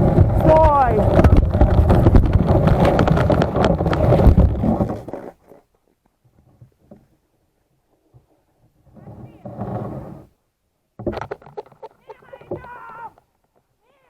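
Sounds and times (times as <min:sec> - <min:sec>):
loud rumbling with crackles: 0:00.0 - 0:05.1.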